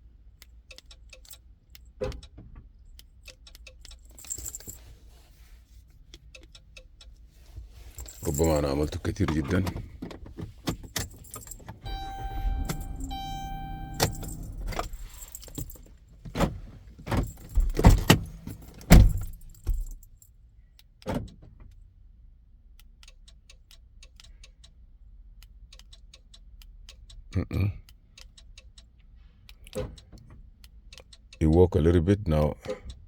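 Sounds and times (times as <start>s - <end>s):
car keys handled: 3.1s - 5.0s, 7.8s - 20.2s
electronic chime tone: 11.9s - 15.3s.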